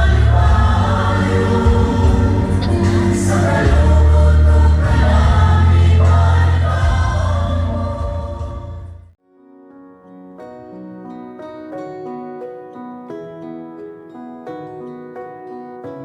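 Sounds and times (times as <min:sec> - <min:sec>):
choral music with deep bass: 0:00.0 - 0:09.2.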